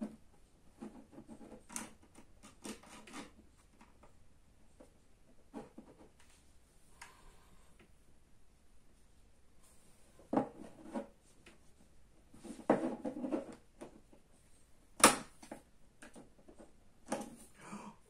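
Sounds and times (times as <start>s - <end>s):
pry tool scraping plastic: 0.7s - 4.0s.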